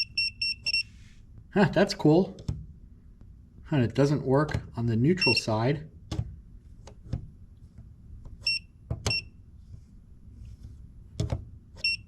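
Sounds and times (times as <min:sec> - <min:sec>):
voltage tester beep: 0:00.0 - 0:00.9, 0:05.2 - 0:05.5, 0:08.4 - 0:09.3, 0:11.8 - 0:12.0.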